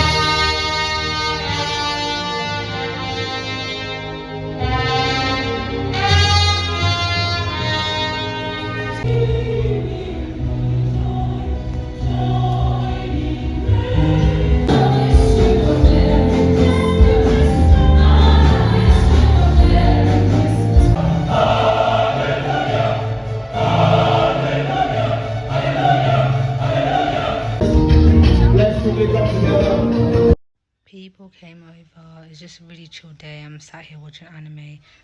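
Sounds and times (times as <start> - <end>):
gospel choir over a beat: 9.0 - 30.2
heavy bass line: 13.8 - 30.4.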